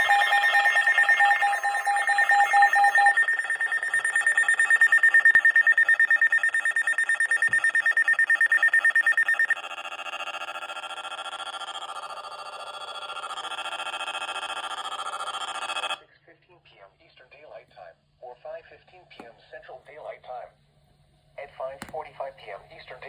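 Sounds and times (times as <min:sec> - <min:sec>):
pulsing electronic alarm beeping: 0:00.0 - 0:16.0.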